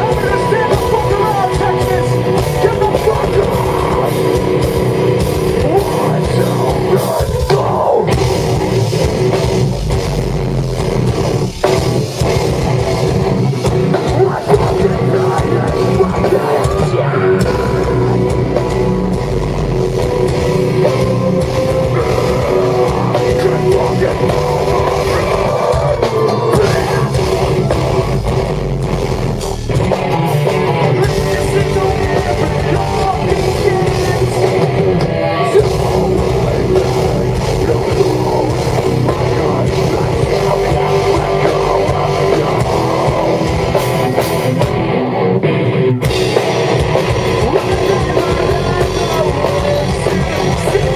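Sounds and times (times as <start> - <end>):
distorted electric guitars: 0.0 - 50.9
drum kit: 0.0 - 50.9.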